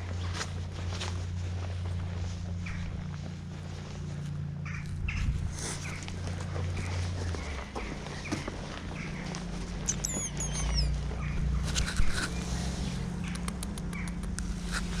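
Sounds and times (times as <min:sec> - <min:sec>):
steady low hum: 0:00.0 - 0:15.0
bird chirping: 0:04.6 - 0:14.4
light clicks: 0:13.2 - 0:14.6.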